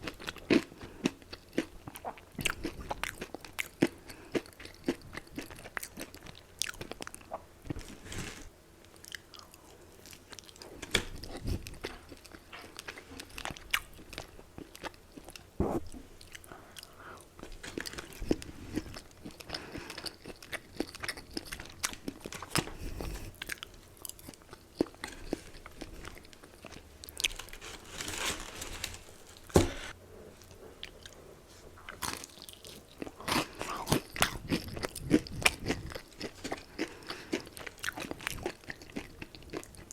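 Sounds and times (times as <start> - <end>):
fried chicken crunching: 31.9 - 39.9.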